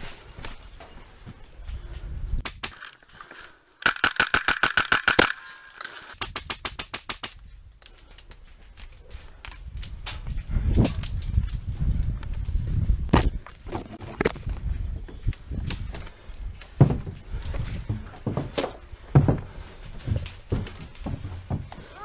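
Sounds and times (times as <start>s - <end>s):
airsoft gun firing full auto: 3.8s - 6.2s.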